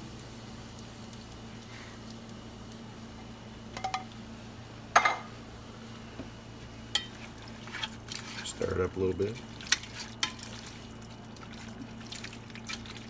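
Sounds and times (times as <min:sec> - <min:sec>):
steady low hum: 0:00.0 - 0:13.0
metal cookware clinking on a pot: 0:03.8 - 0:04.0.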